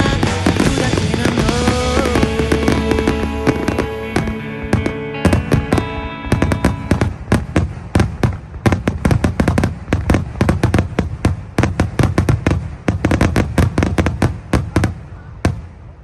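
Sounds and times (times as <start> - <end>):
low rumble: 0.0 - 8.7
fireworks shells bursting: 0.0 - 15.6.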